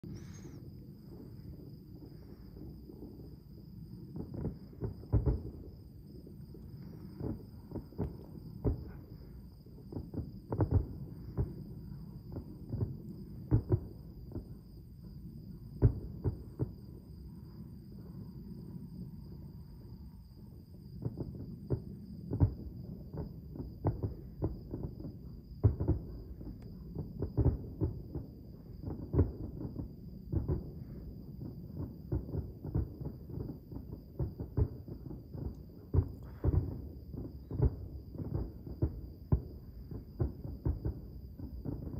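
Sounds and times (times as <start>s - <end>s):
distant fireworks booms: 0.0s - 41.9s
loud fireworks bangs: 4.0s - 14.6s, 15.7s - 17.1s, 21.0s - 41.9s.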